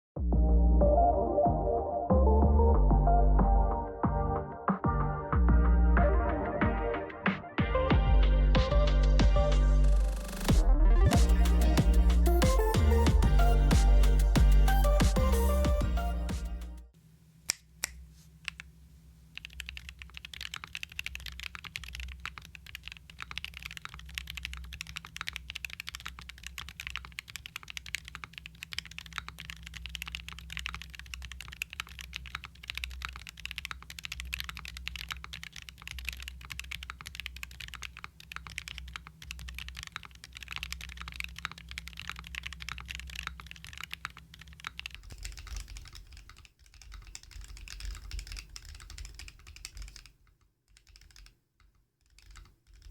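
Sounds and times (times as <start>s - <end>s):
fast typing on mechanical keyboard: 19.4s - 52.9s.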